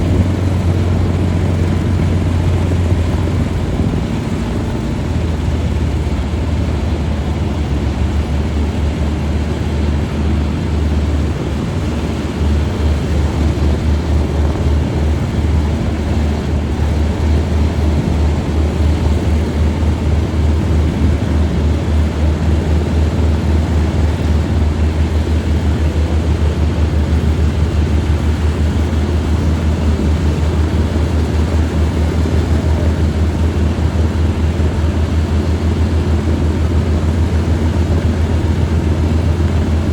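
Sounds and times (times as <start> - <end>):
aircraft engines throbbing: 0.0 - 39.9.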